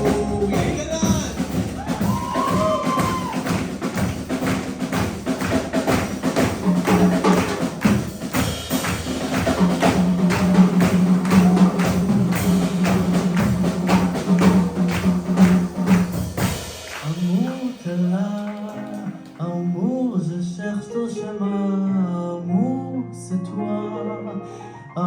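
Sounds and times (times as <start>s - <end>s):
held low note: 0.0s - 1.4s
busy drums: 0.0s - 19.5s.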